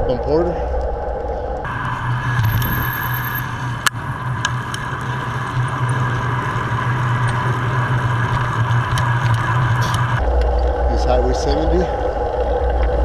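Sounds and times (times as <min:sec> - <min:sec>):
bicycle rolling road noise: 0:00.0 - 0:13.0.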